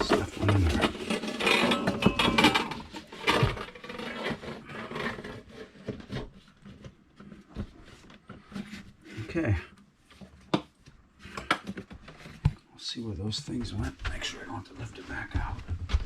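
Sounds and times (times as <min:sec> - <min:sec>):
scraping and rustling of parts: 0:00.0 - 0:09.4.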